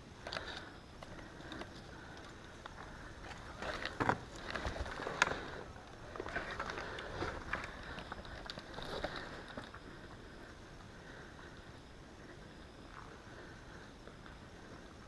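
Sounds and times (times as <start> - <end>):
rustling gear: 0.3 - 10.2.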